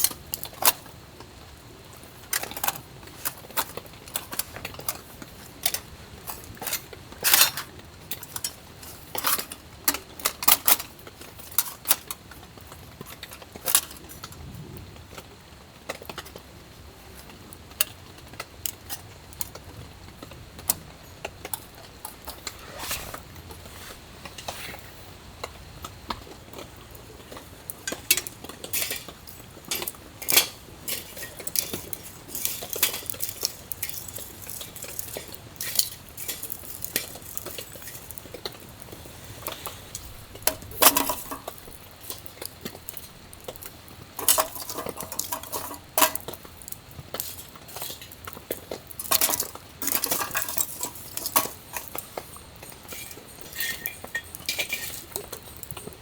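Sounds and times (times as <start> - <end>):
metal cookware clinking: 2.4 - 14.3, 20.6 - 23.2, 27.8 - 38.7, 39.4 - 56.0.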